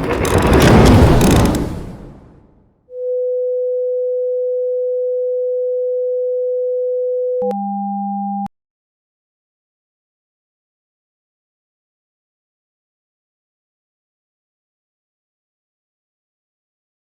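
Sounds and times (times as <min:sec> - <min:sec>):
electronic sine tone: 0:03.0 - 0:08.5.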